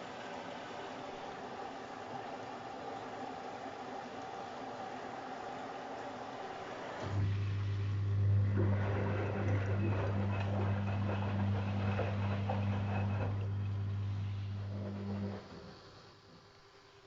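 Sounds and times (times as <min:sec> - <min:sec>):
pump humming: 0:00.0 - 0:17.0
steady hiss: 0:14.1 - 0:17.0.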